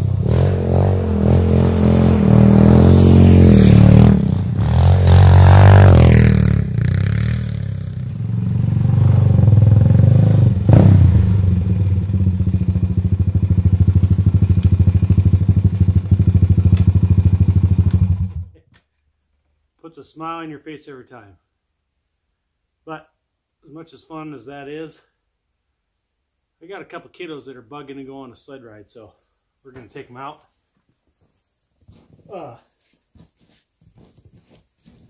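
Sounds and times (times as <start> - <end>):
engine revving: 0.0 - 18.5.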